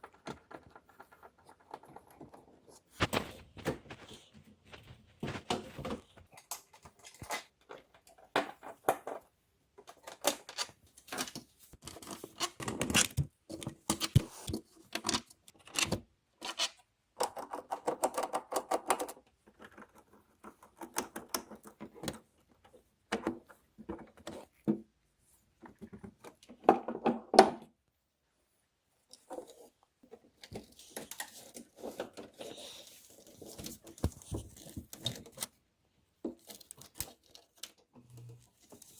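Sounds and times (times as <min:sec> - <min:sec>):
plastic clicks and rattles of piano keys: 0:05.8 - 0:22.3.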